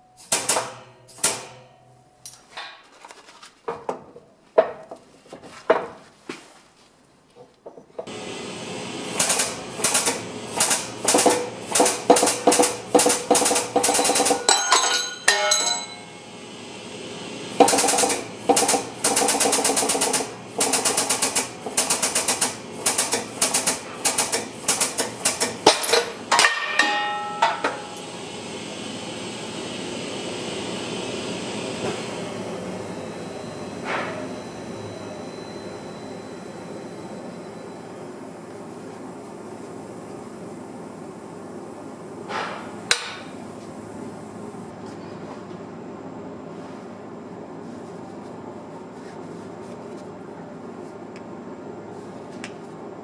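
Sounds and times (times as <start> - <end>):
steady hum: 8.0 - 24.2, 24.8 - 53.0
metallic ring: 13.9 - 16.2, 25.7 - 28.0.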